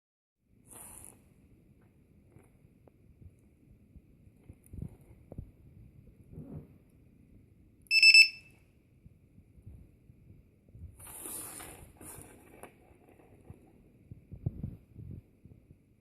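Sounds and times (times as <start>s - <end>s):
high-pitched alarm beep: 7.9s - 8.5s.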